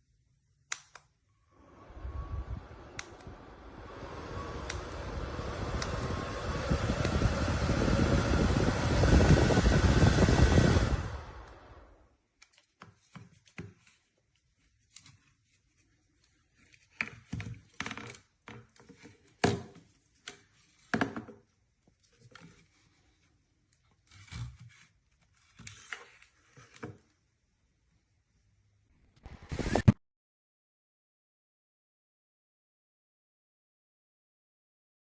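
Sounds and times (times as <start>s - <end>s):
objects being handled: 29.0s - 30.0s.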